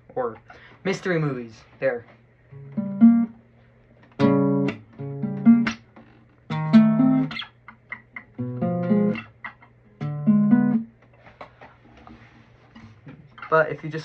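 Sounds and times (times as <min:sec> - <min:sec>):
classical guitar chords: 0:02.5 - 0:03.4, 0:04.2 - 0:05.9, 0:06.5 - 0:11.0.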